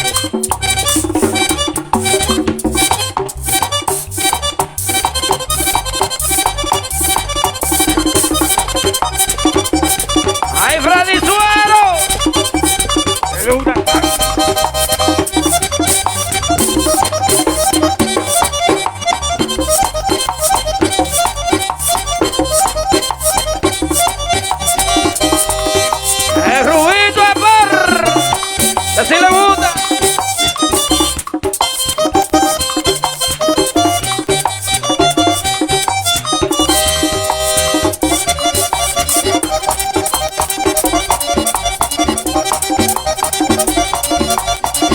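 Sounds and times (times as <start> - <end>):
accordion fast runs: 0.0 - 44.9
bass and percussion rhythm: 0.0 - 44.9
low drum and bass hits: 12.0 - 17.1.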